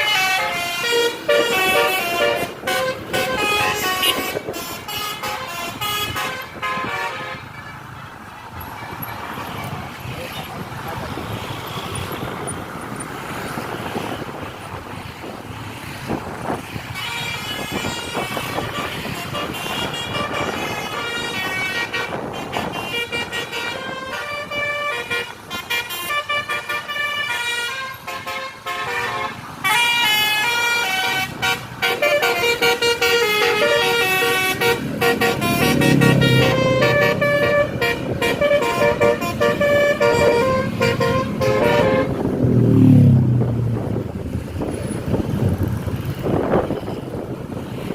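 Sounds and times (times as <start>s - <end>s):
bus horn playing a tune: 0.0s - 7.9s, 16.9s - 42.4s
vehicle rumble: 0.0s - 47.9s.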